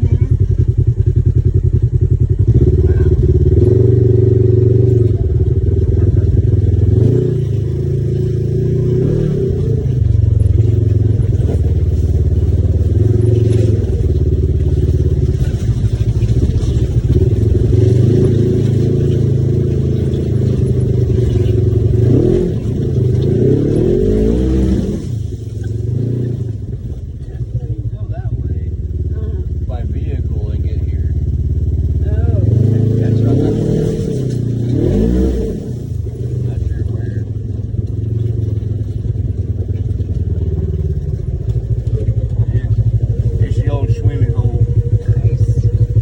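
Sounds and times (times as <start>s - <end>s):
utility vehicle engine revving: 0.0s - 46.0s.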